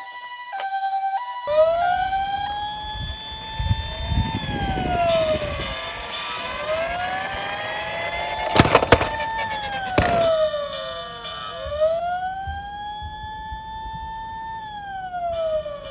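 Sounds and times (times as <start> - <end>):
emergency vehicle sirens wailing: 1.4 - 8.6, 9.2 - 15.9
sharp clacks: 8.3 - 10.5.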